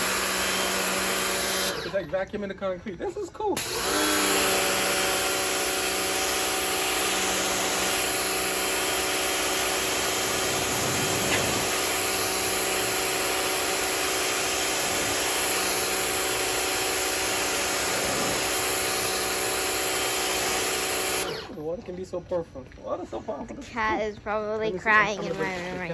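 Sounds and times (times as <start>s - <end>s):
water jet hissing on concrete: 0.0s - 2.1s, 3.6s - 21.6s
pressure washer pump humming: 0.0s - 21.8s.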